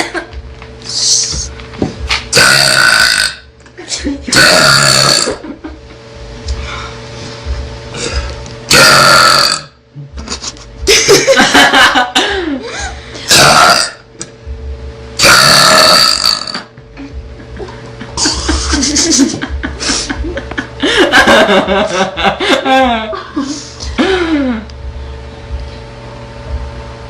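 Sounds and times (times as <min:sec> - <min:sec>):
girl burping: 0:02.4 - 0:03.4, 0:04.3 - 0:05.4, 0:08.7 - 0:09.7, 0:13.3 - 0:14.0, 0:15.2 - 0:16.7.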